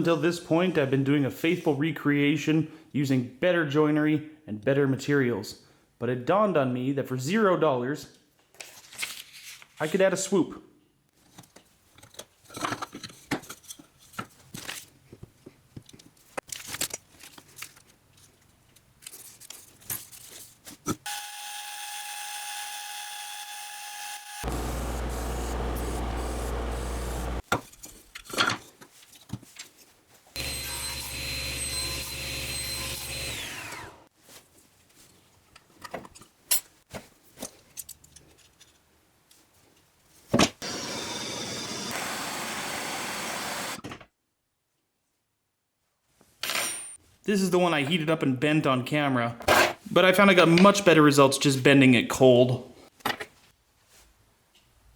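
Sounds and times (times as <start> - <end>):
low rush of power tool: 21.1 - 27.4, 30.4 - 34.1, 40.6 - 43.8
power tool whining: 21.1 - 27.4, 30.4 - 34.1, 40.6 - 43.8.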